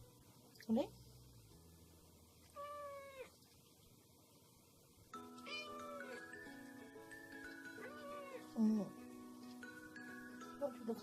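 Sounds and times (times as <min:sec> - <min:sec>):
cat meowing: 0:02.5 - 0:03.4, 0:05.4 - 0:06.2, 0:07.8 - 0:08.6
background music: 0:05.1 - 0:11.0.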